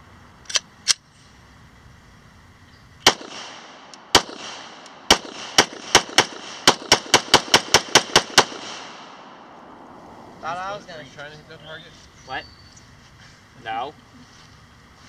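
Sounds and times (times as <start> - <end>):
pistol shots with echo: 3.0 - 9.6.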